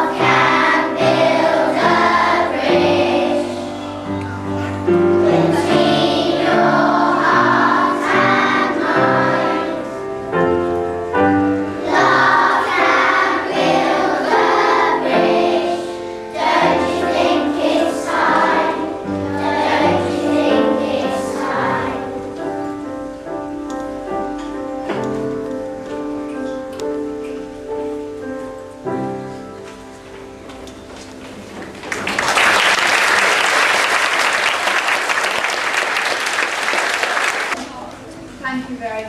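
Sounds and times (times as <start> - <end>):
children singing in chorus: 0.0 - 4.1, 5.1 - 10.1, 11.8 - 22.4
instrumental accompaniment: 0.0 - 32.0.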